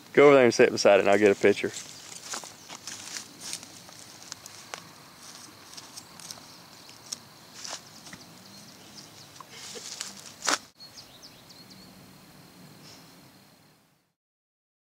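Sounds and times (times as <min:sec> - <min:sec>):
small clicks and rustles: 0:01.8 - 0:08.2.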